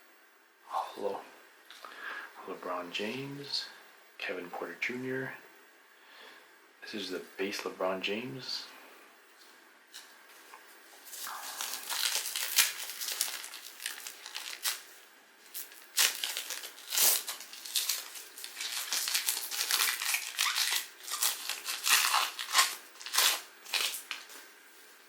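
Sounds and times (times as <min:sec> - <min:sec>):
plastic wrapper crinkling: 0:11.0 - 0:24.5.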